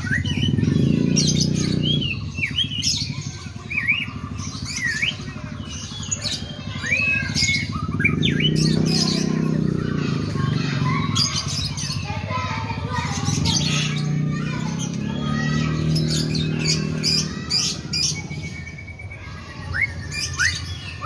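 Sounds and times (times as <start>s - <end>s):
songbird whistling phrases: 0.0s - 9.6s, 13.0s - 21.0s.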